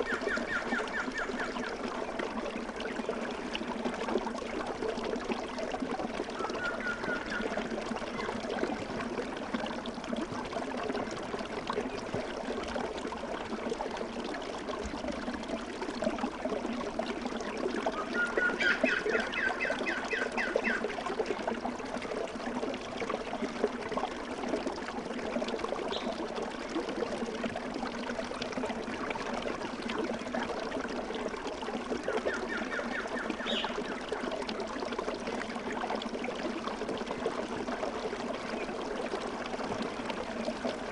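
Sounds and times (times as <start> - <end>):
bird calling in rapid notes: 0.0 - 1.6, 18.0 - 20.8, 32.3 - 33.8
stream trickling: 0.0 - 40.9.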